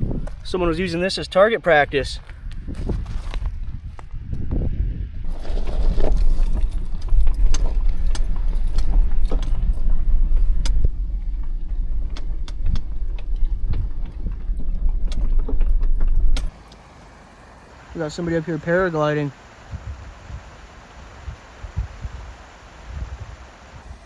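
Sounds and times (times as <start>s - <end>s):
car driving over bumpy dirt road: 5.2s - 16.8s.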